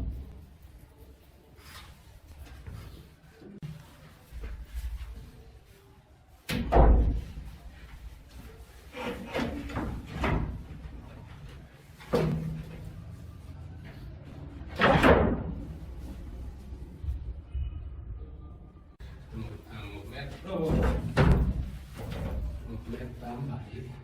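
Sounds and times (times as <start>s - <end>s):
wooden drawers sliding and banging: 8.9s - 11.0s.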